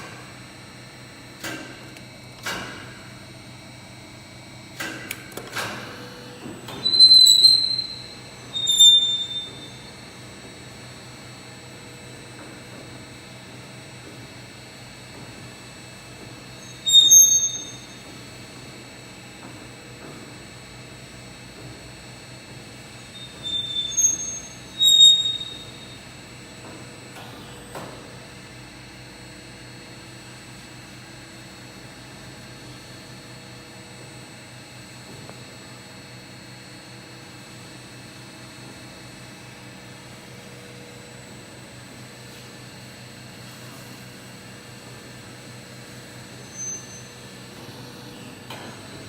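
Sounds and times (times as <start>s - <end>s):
bending machine humming: 0.0s - 49.0s
high squeals: 6.8s - 9.9s, 23.1s - 26.0s, 46.4s - 47.1s.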